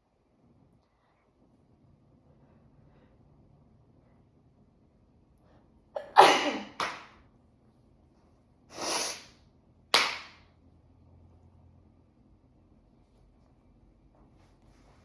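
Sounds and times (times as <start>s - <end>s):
person sneezing: 6.0s - 6.8s, 8.7s - 9.4s.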